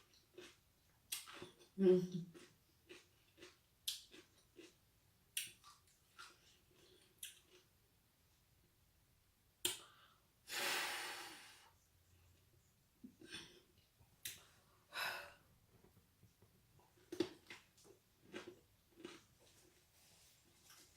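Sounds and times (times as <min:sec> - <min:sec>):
person crunching pickles: 0:00.0 - 0:04.8, 0:16.9 - 0:19.8
hiss: 0:10.5 - 0:11.7.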